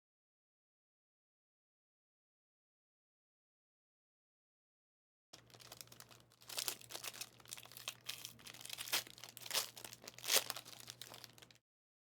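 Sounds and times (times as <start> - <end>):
card pack wrappers crinkling: 5.4 - 11.6
faint steady hum: 5.4 - 11.6
sharp crackles: 5.4 - 11.6.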